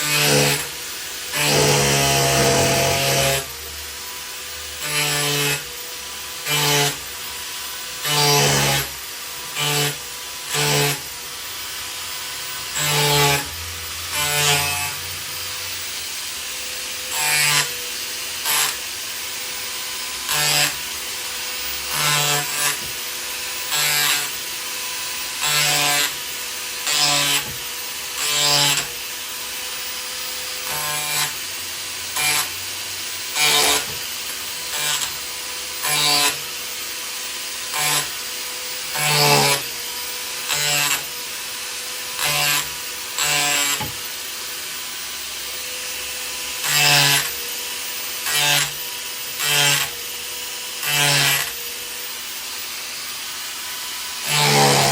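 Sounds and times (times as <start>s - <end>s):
angle grinder running: 0.0s - 54.9s
blade biting into wood: 1.3s - 3.5s, 42.2s - 44.1s, 54.2s - 54.9s.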